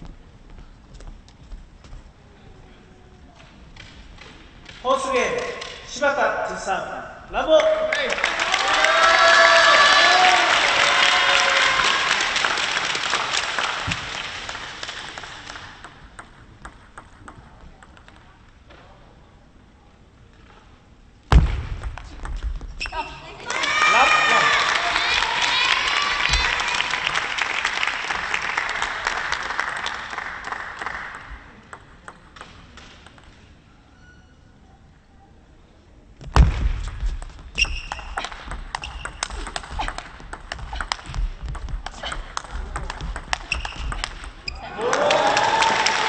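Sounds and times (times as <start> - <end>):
crowd applause: 7.9 - 15.7, 23.4 - 31.3, 44.6 - 46.0.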